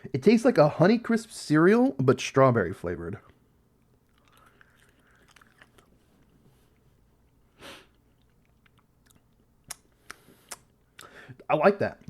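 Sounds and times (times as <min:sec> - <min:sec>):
chewing crisp wafer: 0:03.8 - 0:10.8.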